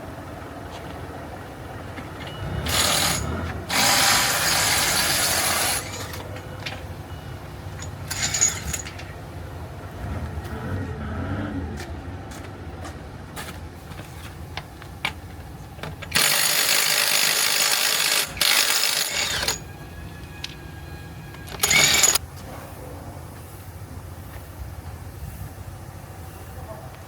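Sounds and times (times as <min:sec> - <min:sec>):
low mechanical rumble: 0:00.0 - 0:16.3.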